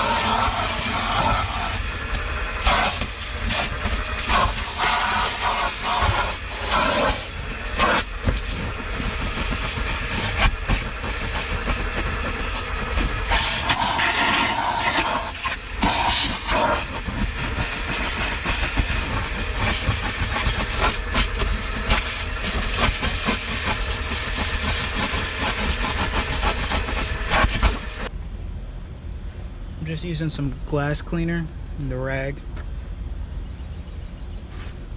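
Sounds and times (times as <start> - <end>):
rag scrubbing a surface: 0.0 - 28.1.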